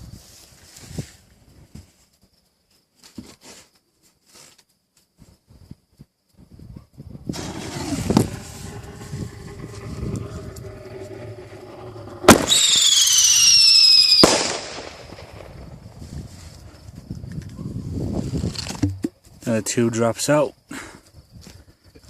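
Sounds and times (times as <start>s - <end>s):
firework sharp crack: 7.3s - 16.3s
falling firework whistle: 7.3s - 16.7s
firework bangs: 7.3s - 16.7s.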